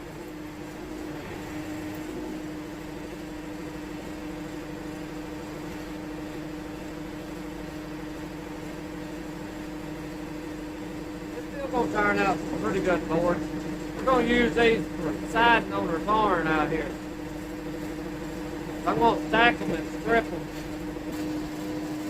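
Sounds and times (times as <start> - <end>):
band sawmill sawing log: 11.5 - 17.2.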